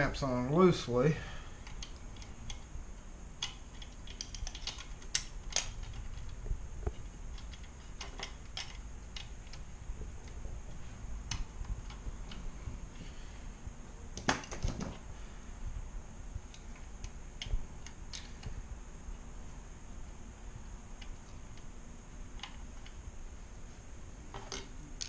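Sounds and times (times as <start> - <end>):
small metal parts clinking: 3.4 - 6.4, 7.3 - 9.6.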